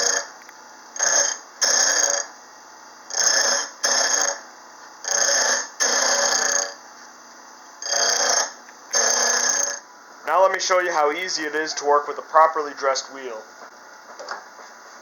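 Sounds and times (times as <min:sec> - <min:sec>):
bench grinder humming: 0:00.0 - 0:00.3, 0:01.0 - 0:02.3, 0:03.1 - 0:06.8, 0:07.8 - 0:12.0
harsh grinding bursts: 0:00.0 - 0:00.3, 0:01.0 - 0:02.3, 0:03.1 - 0:04.4, 0:05.1 - 0:06.8, 0:07.8 - 0:12.0.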